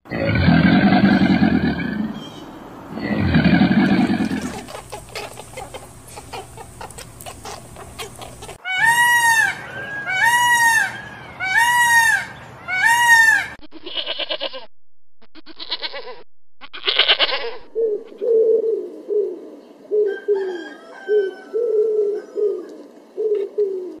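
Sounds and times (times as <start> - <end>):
farm animal calls: 0.1 - 14.7, 15.4 - 18.4.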